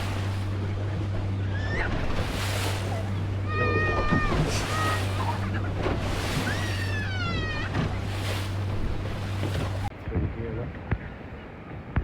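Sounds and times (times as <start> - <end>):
water rushing past: 0.0 - 9.9
outboard engine humming: 0.0 - 10.1
high wavering cry: 6.4 - 7.8.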